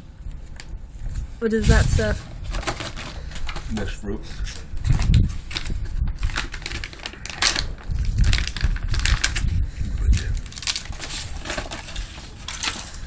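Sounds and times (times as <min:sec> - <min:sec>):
plastic pouches crinkling: 0:02.1 - 0:09.5, 0:10.2 - 0:13.0.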